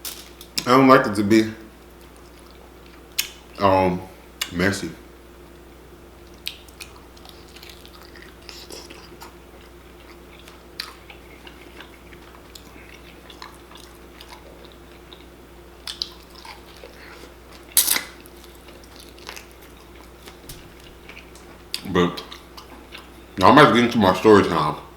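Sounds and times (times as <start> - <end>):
faint steady hum: 0.0 - 24.9
person chewing: 6.2 - 23.4.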